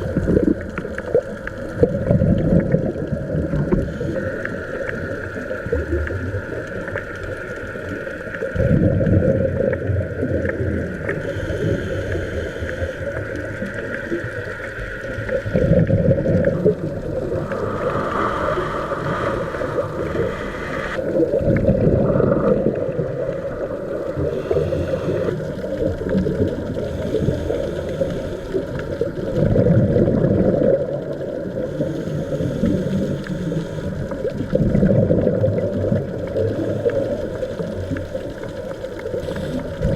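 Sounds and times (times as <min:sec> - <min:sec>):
bubbles rushing out: 0:00.0 - 0:07.6, 0:08.4 - 0:11.2, 0:13.1 - 0:24.3, 0:25.2 - 0:27.1, 0:28.5 - 0:31.7, 0:34.1 - 0:39.9
regulator hiss: 0:11.1 - 0:21.2, 0:23.9 - 0:25.8, 0:26.7 - 0:29.0, 0:31.6 - 0:34.2
steady high whine: 0:11.2 - 0:21.2.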